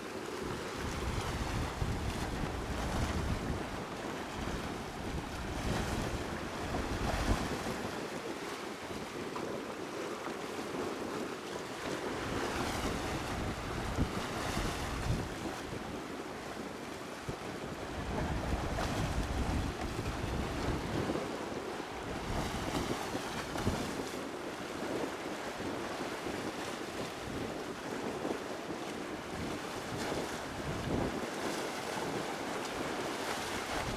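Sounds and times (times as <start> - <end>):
wind buffeting microphone: 0.4 - 8.2, 11.9 - 33.9
sea waves washing: 30.2 - 33.9.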